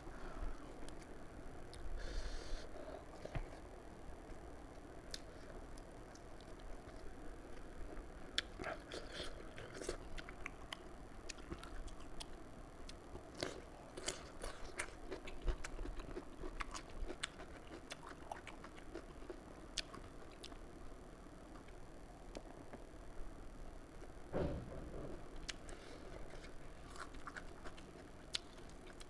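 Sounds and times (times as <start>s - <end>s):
chewing and biting food: 8.4s - 20.6s, 25.4s - 29.0s.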